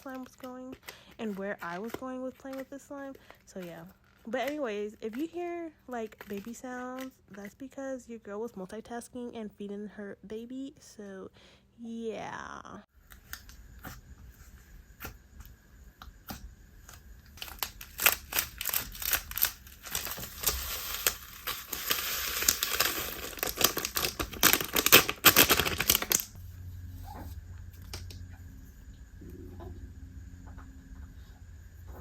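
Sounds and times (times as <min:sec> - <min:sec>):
low steady hum: 0:00.0 - 0:32.0
slime crackling and popping: 0:17.3 - 0:26.4.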